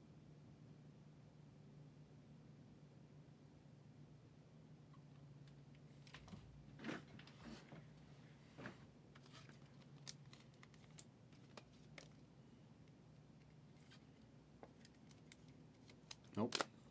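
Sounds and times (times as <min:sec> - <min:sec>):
trading cards rustling: 0:09.2 - 0:12.3, 0:13.7 - 0:16.9.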